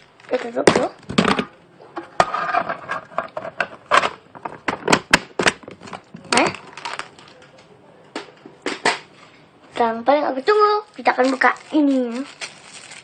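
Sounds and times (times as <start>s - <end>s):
plastic crinkling: 0.0s - 1.0s, 5.6s - 7.5s, 10.4s - 13.0s
plastic packaging clicks: 3.9s - 9.1s, 11.0s - 13.0s.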